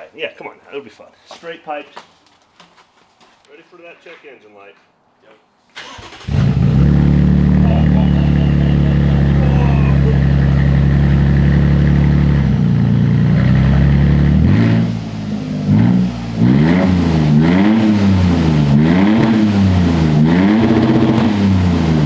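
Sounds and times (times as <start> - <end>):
truck engine idling and revving: 6.1 - 22.0.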